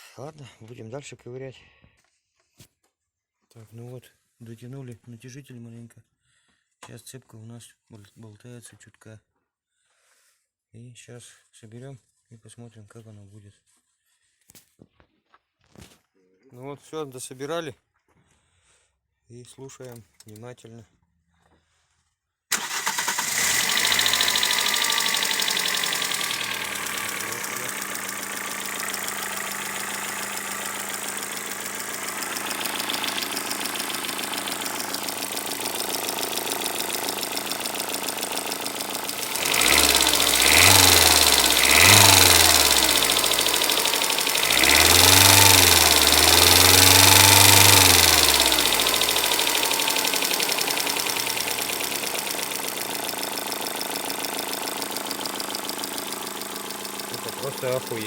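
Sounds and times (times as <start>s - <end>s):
car engine idling and revving: 22.5s - 58.0s
engine knocking: 22.5s - 58.0s.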